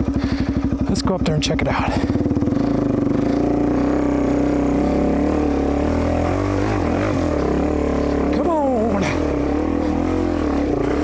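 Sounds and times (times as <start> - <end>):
dirt bike engine revving: 0.0 - 11.0.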